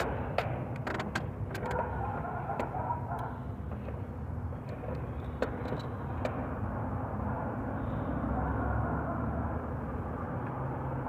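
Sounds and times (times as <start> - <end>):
sharp clicks: 0.0 - 1.9.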